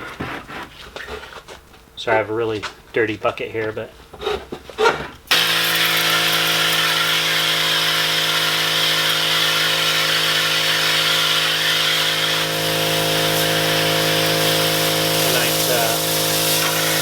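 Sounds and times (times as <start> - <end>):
pump motor whine: 5.3 - 17.0
water jet spraying: 5.3 - 17.0.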